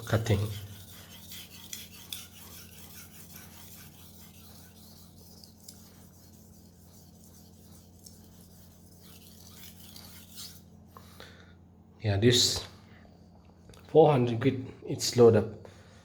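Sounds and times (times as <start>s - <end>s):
knife scraping on sharpening stone: 0.0s - 10.6s
steady low hum: 0.0s - 16.0s.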